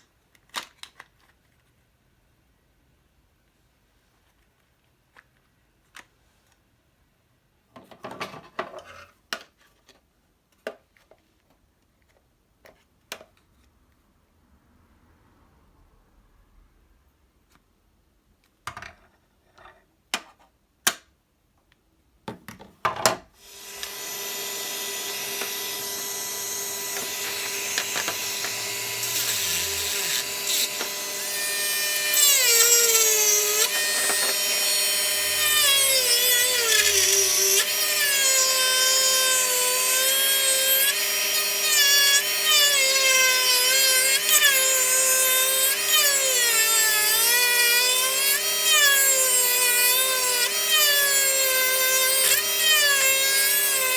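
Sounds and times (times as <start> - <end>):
power tool motor whining: 23.4 - 53.9.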